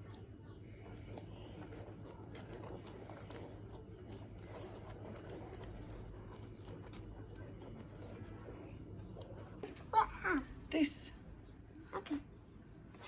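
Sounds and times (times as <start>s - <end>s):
spoon stirring batter in bowl: 0.0s - 9.9s.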